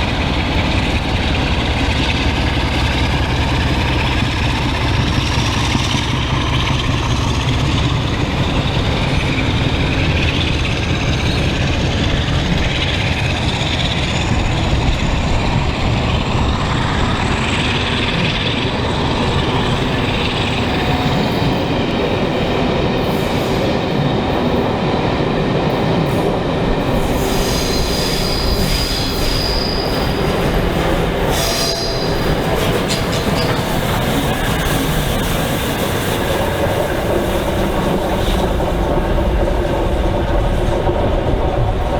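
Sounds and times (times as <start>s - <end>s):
train wheels rumbling on track: 0.0s - 41.9s
high-pitched wheel squeal: 27.0s - 30.3s, 31.3s - 33.7s.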